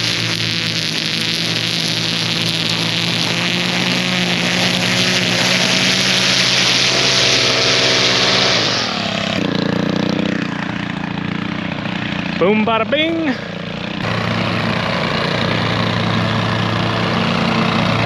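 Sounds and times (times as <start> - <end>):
loud hiss: 0.0 - 9.4
engine running: 0.0 - 18.0.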